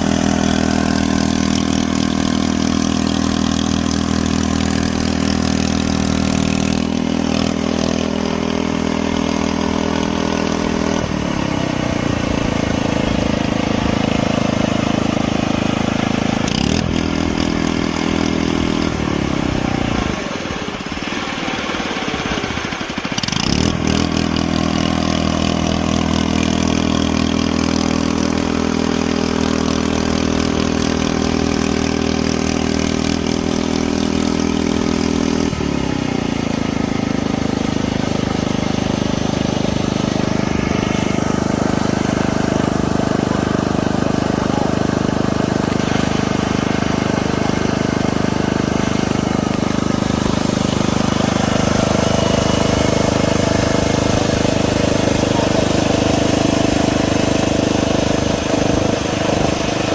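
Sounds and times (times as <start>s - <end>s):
model bulldozer engine drone: 0.0s - 59.9s.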